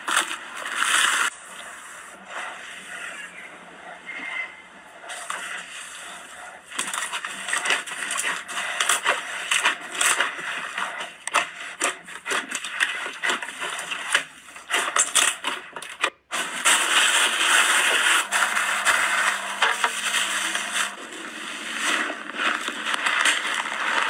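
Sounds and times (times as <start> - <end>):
slime crackling and popping: 6.7 - 24.0.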